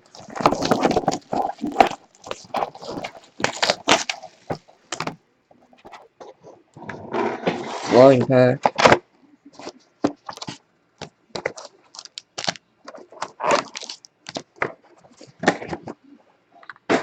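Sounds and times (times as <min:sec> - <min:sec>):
card packaging crackling: 0:00.0 - 0:05.2.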